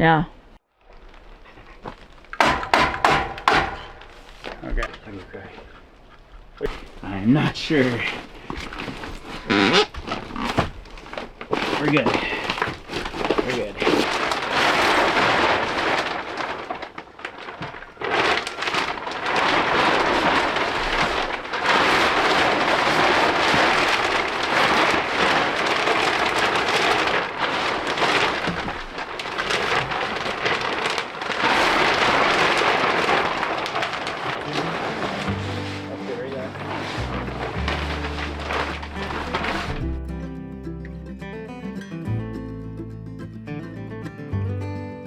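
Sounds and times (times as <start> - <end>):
heavy rain: 13.6 - 39.8.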